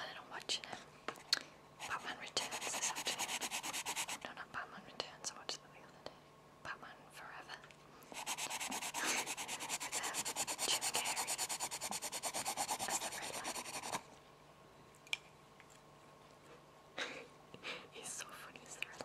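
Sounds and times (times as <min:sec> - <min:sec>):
pencil scratching back and forth: 0:01.8 - 0:04.2, 0:08.1 - 0:14.0.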